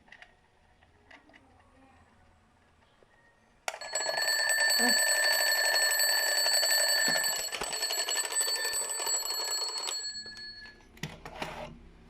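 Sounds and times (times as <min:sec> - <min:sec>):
alarm clock ringing: 0:03.7 - 0:10.8.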